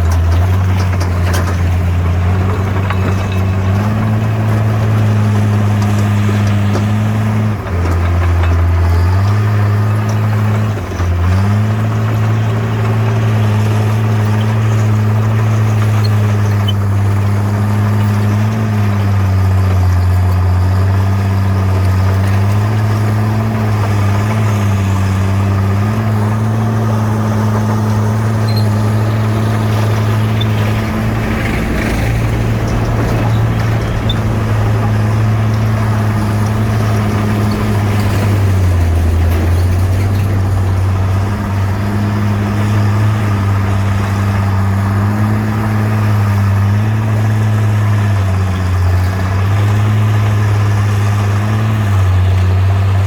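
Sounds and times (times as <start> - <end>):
bulldozer diesel engine running: 0.0 - 53.0
rough noise: 21.6 - 47.1.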